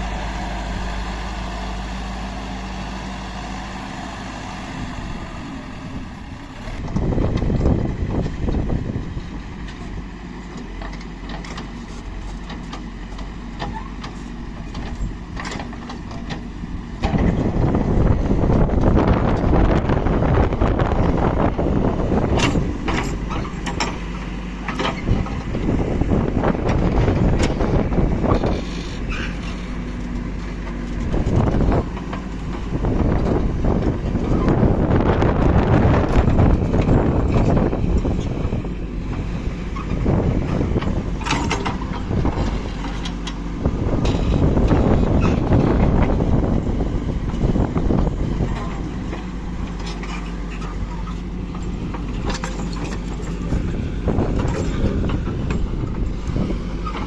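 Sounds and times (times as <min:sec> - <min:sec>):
heavy vehicle engine under load: 0:00.0 - 0:57.0
wind buffeting microphone: 0:04.6 - 0:10.1, 0:16.7 - 0:24.1, 0:24.9 - 0:30.0, 0:30.9 - 0:57.0.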